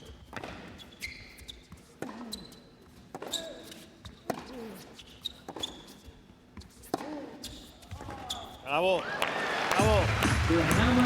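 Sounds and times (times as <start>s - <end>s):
shoe squeaks on court: 0.0s - 8.7s
tennis ball hit and bouncing: 3.1s - 3.4s, 4.2s - 4.8s, 6.6s - 7.4s.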